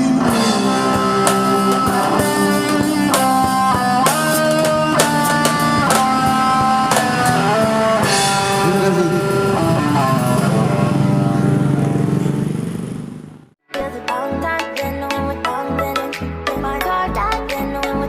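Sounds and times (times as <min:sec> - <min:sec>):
live band playing pop ballad: 0:00.0 - 0:12.2, 0:13.8 - 0:18.0.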